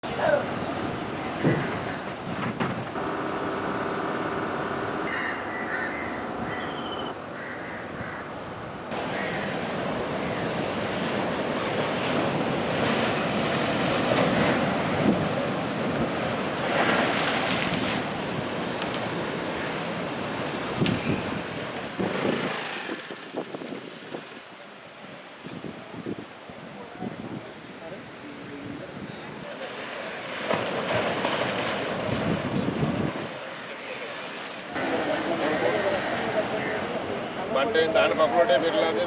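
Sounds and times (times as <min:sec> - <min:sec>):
heavy sea surf breaking: 0:08.4 - 0:24.5, 0:29.4 - 0:39.0
wind buffeting microphone: 0:20.6 - 0:24.5, 0:31.9 - 0:33.4.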